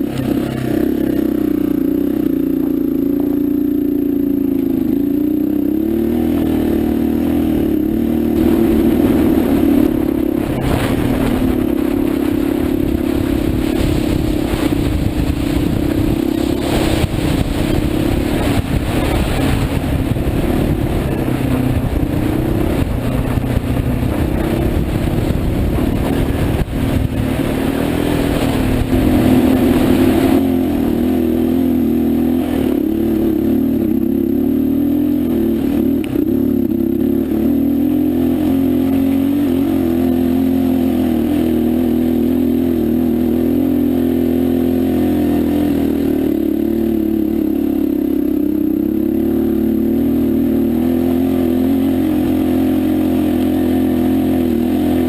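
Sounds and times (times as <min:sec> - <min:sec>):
motorcycle engine running: 0:00.0 - 0:55.0
rattling and rushing noise: 0:03.8 - 0:40.4.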